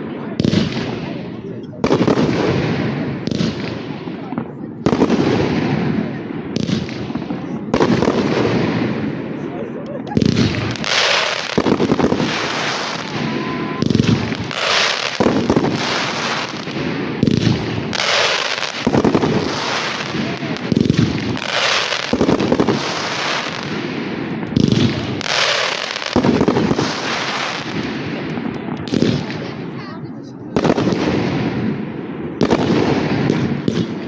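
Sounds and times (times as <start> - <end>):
firework shells bursting: 10.2 - 29.4.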